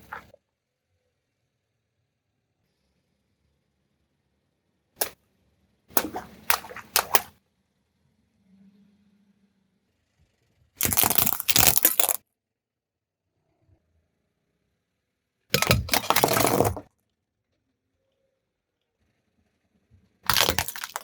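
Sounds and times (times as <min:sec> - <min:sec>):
car tyre crushing brittle objects: 0:10.8 - 0:12.2, 0:20.3 - 0:21.0.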